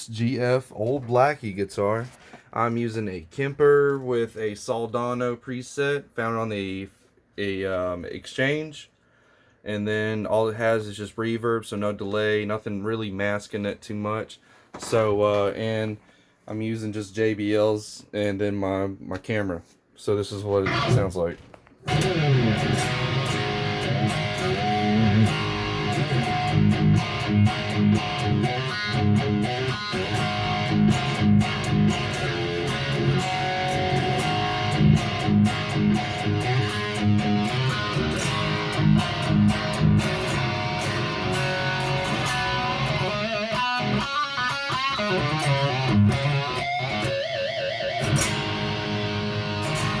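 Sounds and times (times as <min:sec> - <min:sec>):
electric guitar riffs and leads: 0:20.6 - 0:21.1, 0:21.8 - 0:50.0.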